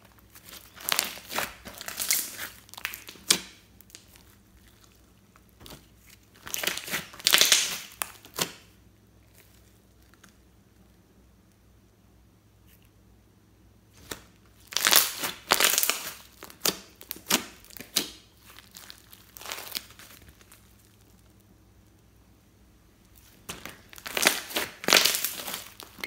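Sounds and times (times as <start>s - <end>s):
slime crackling and popping: 0.0s - 8.7s, 13.9s - 22.0s, 23.2s - 26.0s.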